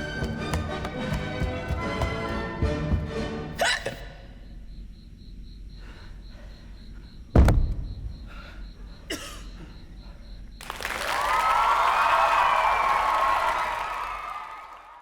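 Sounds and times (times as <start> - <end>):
audience applause: 0.0 - 2.4, 10.6 - 15.0
loud thump: 0.2 - 3.4, 7.3 - 8.2
hiccup: 3.6 - 4.2
faint breathing: 5.7 - 7.0, 8.2 - 9.1.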